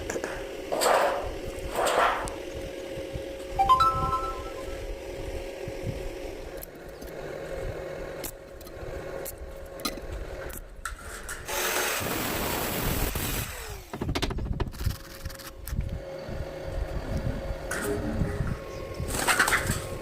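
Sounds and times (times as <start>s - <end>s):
short falling tone: 3.6s - 4.8s.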